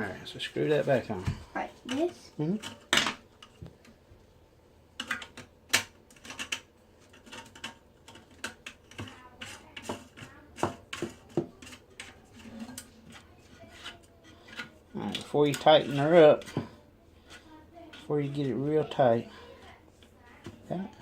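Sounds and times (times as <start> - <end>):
plastic parts clicking and tapping: 5.0 - 13.2.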